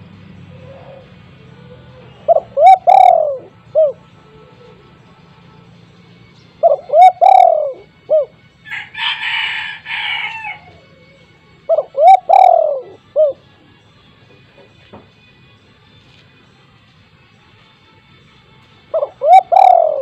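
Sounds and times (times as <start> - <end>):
dove cooing: 0.0 - 5.2, 6.6 - 13.5, 18.9 - 20.0.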